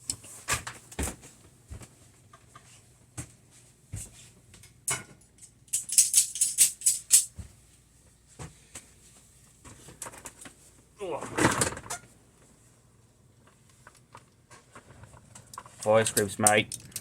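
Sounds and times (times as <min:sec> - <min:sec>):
jingling rattles: 0:05.7 - 0:07.3
metal hand tools clicking: 0:05.7 - 0:07.3, 0:16.2 - 0:17.0.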